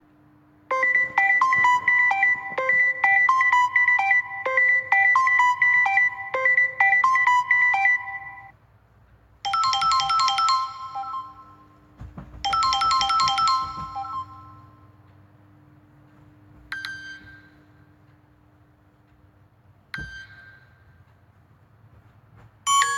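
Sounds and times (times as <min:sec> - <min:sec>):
electronic ringtone melody: 0:00.7 - 0:08.5, 0:09.5 - 0:11.7, 0:12.5 - 0:14.7.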